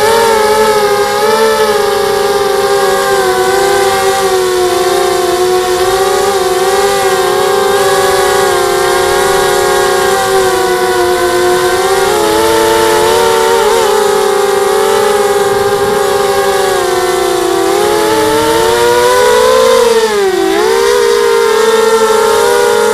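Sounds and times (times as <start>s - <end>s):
quadcopter motors whining: 0.0s - 22.9s.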